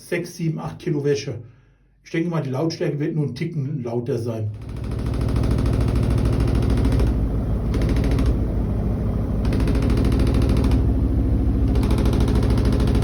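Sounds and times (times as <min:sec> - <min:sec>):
washing machine running: 0:04.6 - 0:13.0.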